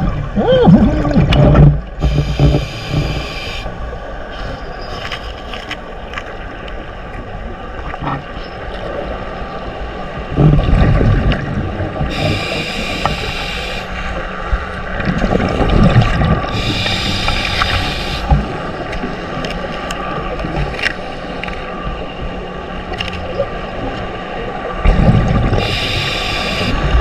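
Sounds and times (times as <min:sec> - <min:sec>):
regulator hiss on inhale: 0:02.1 - 0:03.7, 0:12.1 - 0:14.1, 0:16.5 - 0:18.3, 0:25.6 - 0:26.8.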